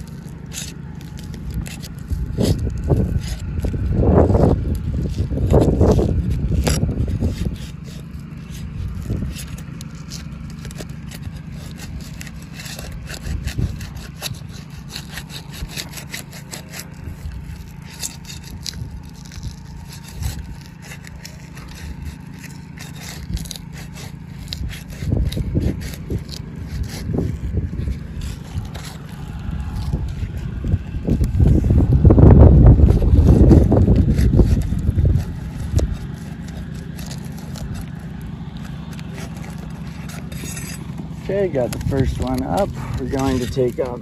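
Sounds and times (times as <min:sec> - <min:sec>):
shingles scraping and crackling: 0:00.0 - 0:44.0
steady low rumble: 0:00.0 - 0:44.0.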